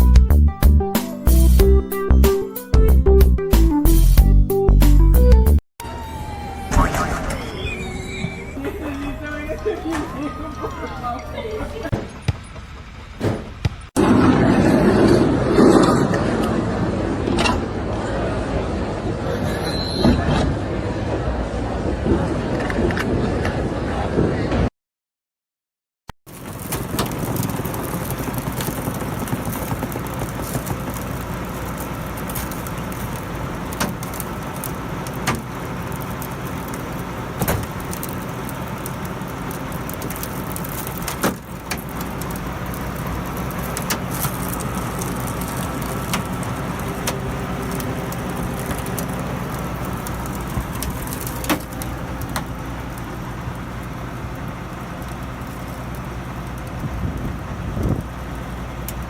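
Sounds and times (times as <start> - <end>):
engine running steadily: 26.3 - 59.0.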